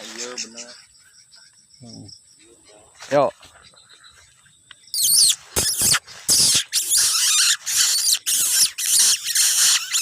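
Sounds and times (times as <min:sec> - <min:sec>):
bird squawking harshly: 0:05.0 - 0:10.0.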